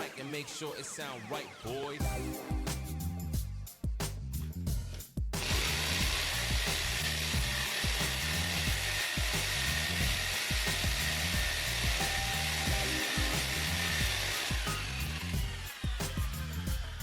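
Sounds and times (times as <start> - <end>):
background music with bass: 2.0 - 17.0
electric drill boring through wall: 5.4 - 17.0.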